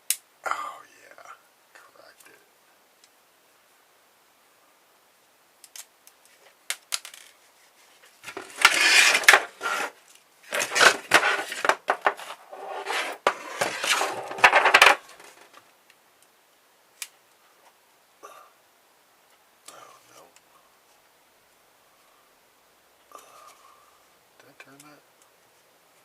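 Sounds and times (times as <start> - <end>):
small metal parts clattering: 10.5 - 15.4.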